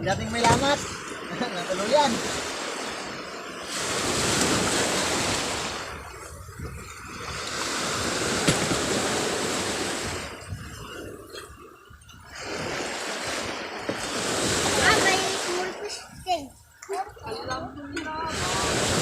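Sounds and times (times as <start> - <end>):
sea water rushing: 0.0 - 19.0.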